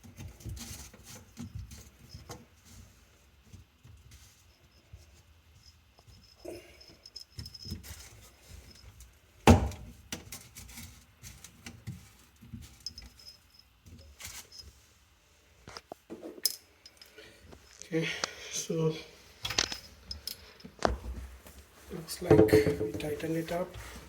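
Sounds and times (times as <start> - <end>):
plastic drain parts knocking: 22.2 - 23.2.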